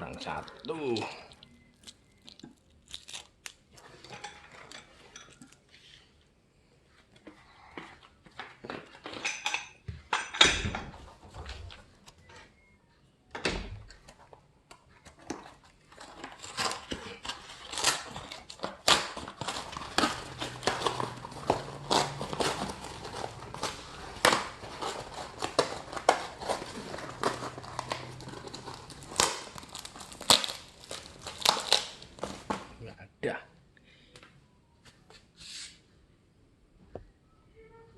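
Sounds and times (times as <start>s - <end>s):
packaging crinkling and rustling: 15.0s - 32.8s.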